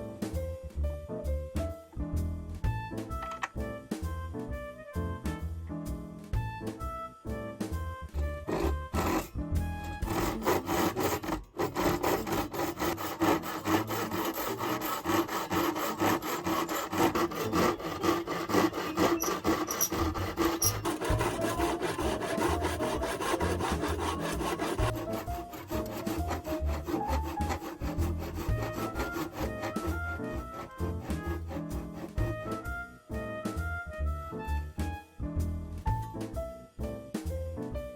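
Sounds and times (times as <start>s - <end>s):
hand saw cutting wood: 8.2s - 32.8s.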